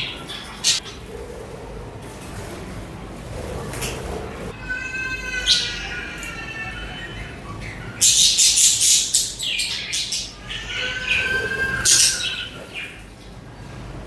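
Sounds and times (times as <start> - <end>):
budgerigars chattering and chirping: 0.0 - 1.0, 6.8 - 13.1
whistled bird notes: 10.8 - 13.0.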